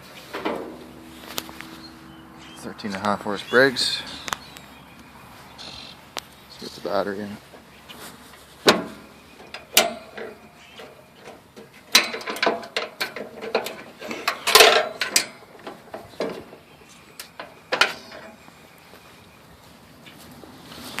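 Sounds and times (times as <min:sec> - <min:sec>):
hard parts knocking and rattling: 0:00.0 - 0:01.8, 0:08.6 - 0:18.4.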